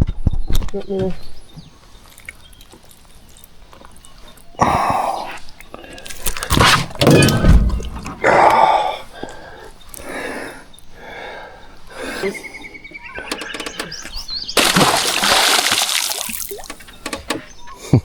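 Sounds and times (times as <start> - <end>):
water splashing and sloshing: 14.5 - 17.1.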